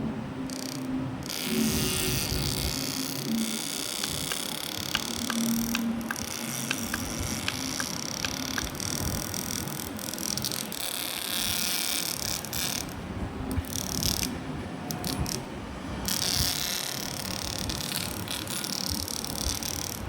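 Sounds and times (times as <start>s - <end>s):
electric fan running: 0.0s - 20.0s
fan clicks and rattles: 3.7s - 15.5s.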